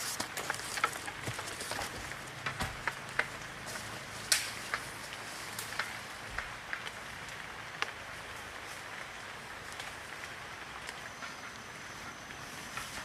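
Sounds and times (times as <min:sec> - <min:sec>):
faint steady hiss: 0:00.0 - 0:13.0
light clicks and snaps: 0:04.3 - 0:04.9.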